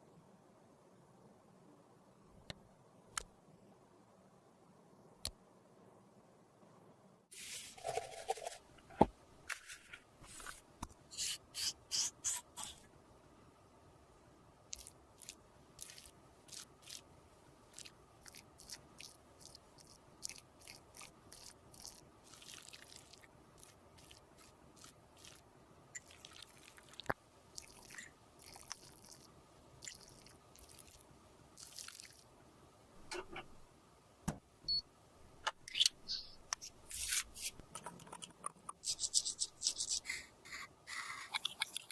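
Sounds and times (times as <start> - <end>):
squishy makeup paste sounds: 14.7 - 17.0, 17.7 - 25.4.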